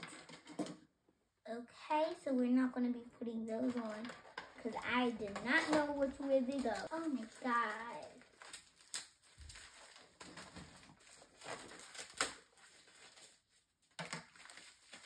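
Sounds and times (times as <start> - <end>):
plastic and paper rustling: 2.0 - 15.0
packaging clicks and taps: 3.6 - 7.8.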